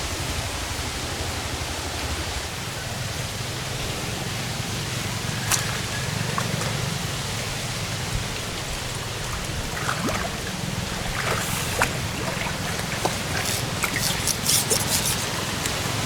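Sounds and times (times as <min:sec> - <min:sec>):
water rushing and trickling: 0:00.0 - 0:16.0
short splashes and clicks: 0:05.4 - 0:06.9, 0:08.4 - 0:16.0.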